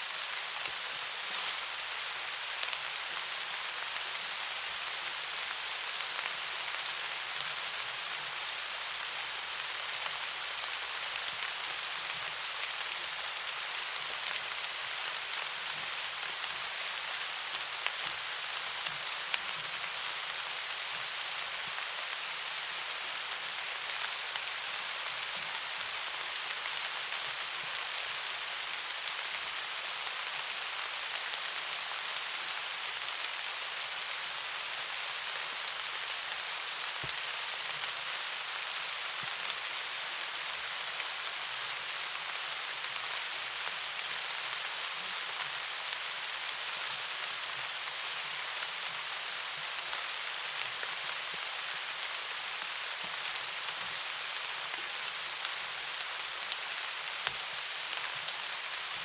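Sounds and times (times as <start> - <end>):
steady rain hiss: 0.0 - 59.0
faint raindrop ticks: 57.2 - 58.4.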